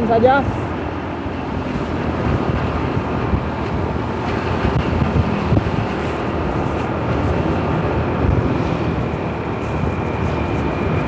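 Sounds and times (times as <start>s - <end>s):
road vehicle rumble: 0.0s - 11.0s
wind buffeting microphone: 0.0s - 11.0s.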